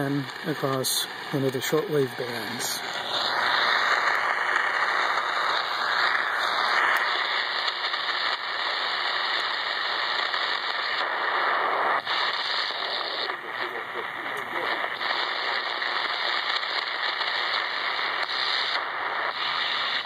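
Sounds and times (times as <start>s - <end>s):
radio static hiss: 0.0s - 20.0s.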